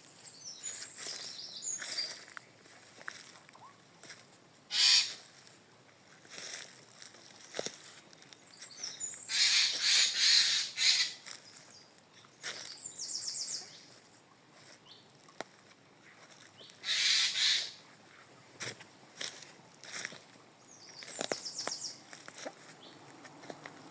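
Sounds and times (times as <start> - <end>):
rapid high bird trill: 4.7 - 5.2, 9.3 - 11.2, 16.8 - 17.8
birds calling harshly: 4.7 - 5.3, 8.5 - 11.9, 16.6 - 18.0.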